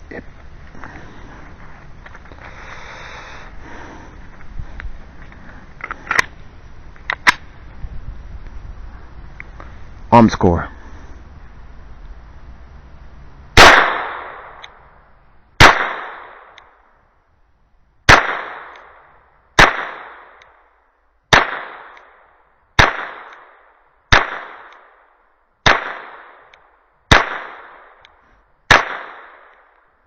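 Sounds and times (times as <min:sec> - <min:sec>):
rifle shots with echo: 0:13.6 - 0:14.6, 0:15.6 - 0:16.6, 0:18.1 - 0:19.0, 0:19.6 - 0:20.4, 0:21.3 - 0:22.1, 0:22.8 - 0:25.0, 0:25.6 - 0:28.0, 0:28.7 - 0:29.7.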